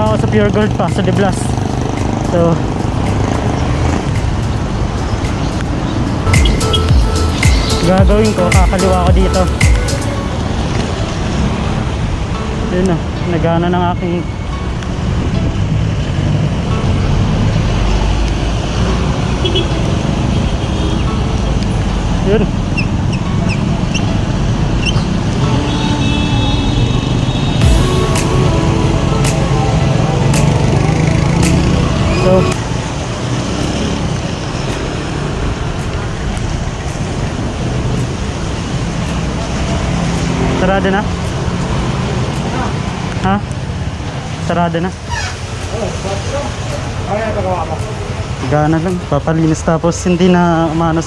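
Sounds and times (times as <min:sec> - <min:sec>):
road traffic: 0:00.0 - 0:51.0
wind: 0:00.0 - 0:51.0.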